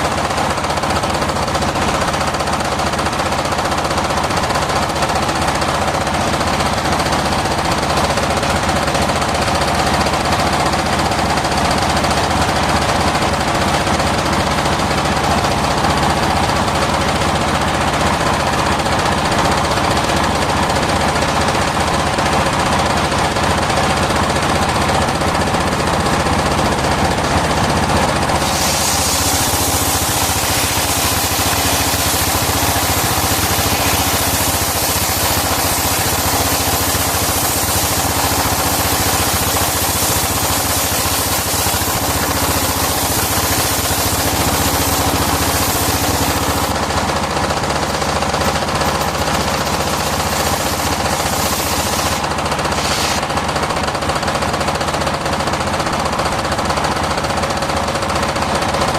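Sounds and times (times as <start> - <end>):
sawmill knocking drone: 0.0 - 58.9
saw blade hissing through wood: 27.9 - 53.4.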